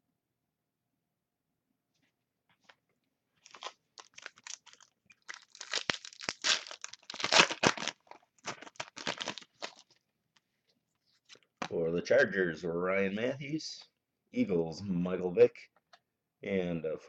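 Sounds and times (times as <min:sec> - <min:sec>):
foil wrapper tearing and crinkling: 0:03.4 - 0:10.0.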